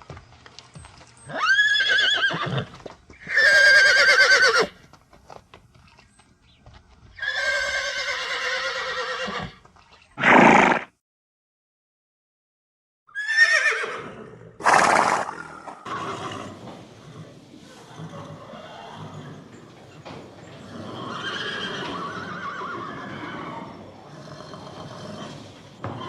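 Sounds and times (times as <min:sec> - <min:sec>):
horse whinnying: 0:01.3 - 0:04.8, 0:07.2 - 0:09.6, 0:10.2 - 0:10.9, 0:13.1 - 0:26.0
horse snorting blast: 0:10.2 - 0:10.9, 0:14.6 - 0:19.4, 0:20.7 - 0:26.0.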